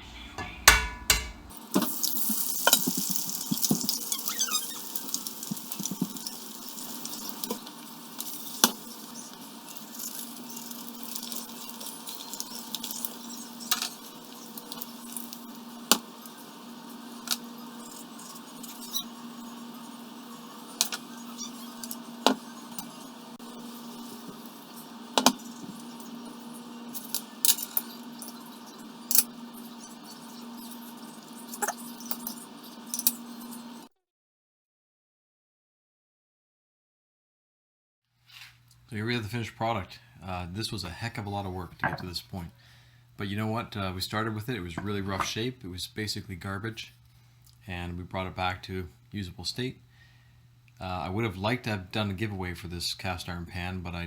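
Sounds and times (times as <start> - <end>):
eggs sizzling in a pan: 0.3 - 33.9.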